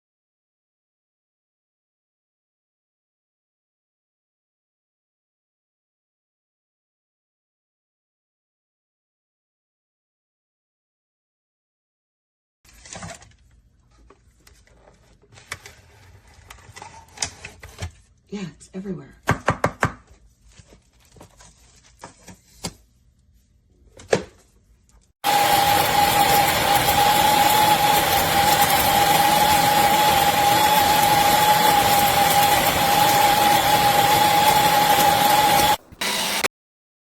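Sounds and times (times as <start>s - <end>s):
coffee grinder motor whine: 25.2s - 36.5s.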